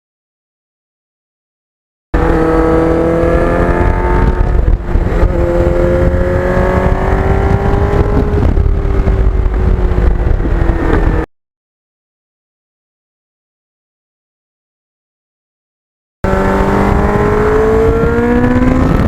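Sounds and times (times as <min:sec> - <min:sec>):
motorcycle engine revving: 0:02.2 - 0:11.3, 0:16.2 - 0:19.0.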